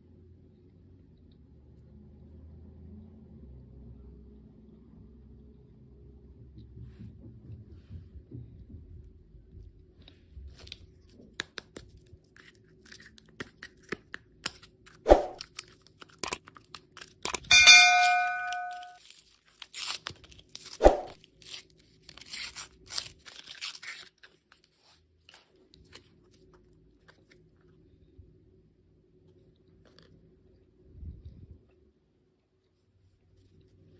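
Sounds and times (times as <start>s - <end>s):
candy packaging crinkling: 11.5s - 17.5s, 19.0s - 27.5s
short ringing ding: 17.5s - 19.0s.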